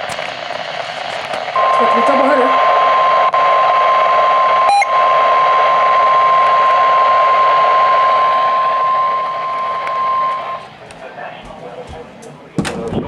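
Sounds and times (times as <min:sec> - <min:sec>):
radio hiss: 0:00.0 - 0:12.2
steady high alarm tone: 0:01.5 - 0:10.8.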